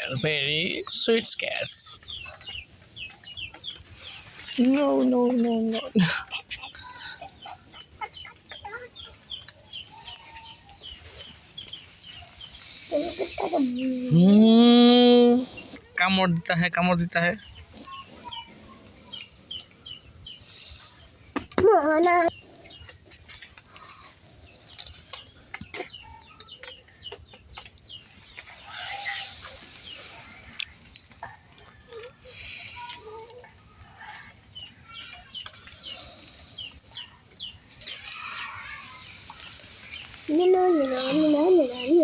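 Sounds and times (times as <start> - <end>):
birds chirping: 0.0 - 42.0
chickens clucking: 1.0 - 14.2.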